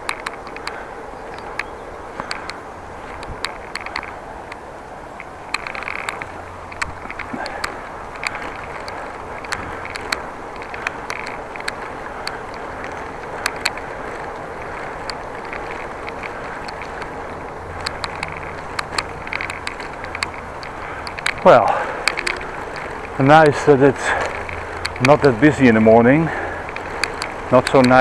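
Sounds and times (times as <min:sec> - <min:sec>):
bicycle clicks and rattles: 0:00.0 - 0:28.0
tyre and wind noise: 0:00.0 - 0:28.0.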